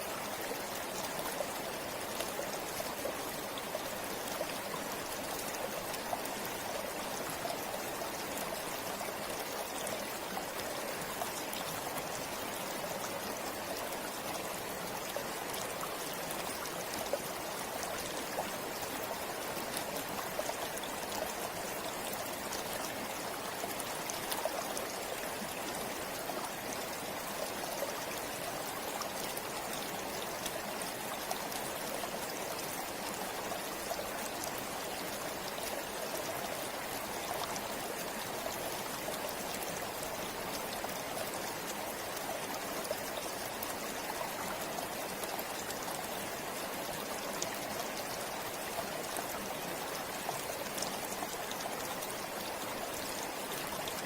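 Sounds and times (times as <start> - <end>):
river flowing over rocks: 0.0 - 54.0.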